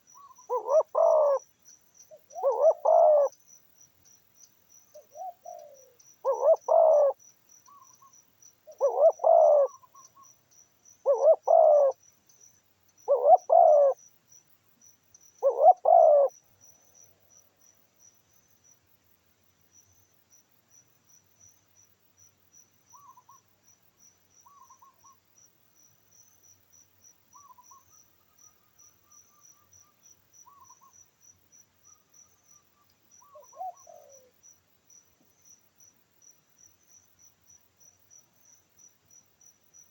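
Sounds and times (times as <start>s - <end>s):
crickets chirping: 0.0s - 39.9s
bird calling: 0.2s - 1.4s, 2.2s - 3.3s, 5.0s - 8.1s, 8.7s - 10.2s, 11.0s - 12.0s, 13.1s - 14.0s, 15.4s - 16.3s.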